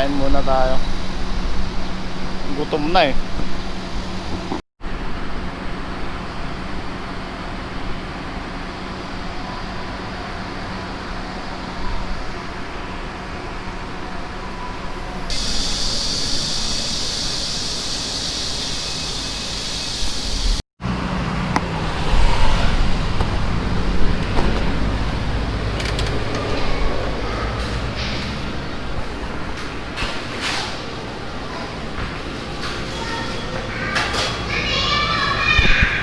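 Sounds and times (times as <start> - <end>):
low traffic rumble: 0.0 - 36.0
high hiss: 15.3 - 20.6
vehicles passing: 19.4 - 36.0.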